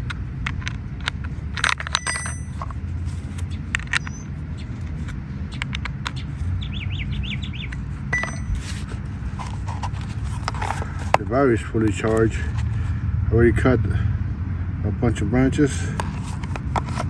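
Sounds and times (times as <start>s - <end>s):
tool handling clicks and clinks: 1.0s - 2.8s, 8.2s - 11.2s
bird twittering trill: 3.5s - 4.7s, 5.5s - 8.6s.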